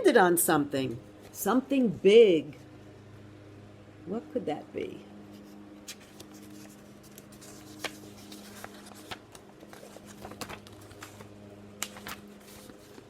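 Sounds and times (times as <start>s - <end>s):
low electrical hum: 0.0s - 13.0s
book pages turning: 5.3s - 13.0s.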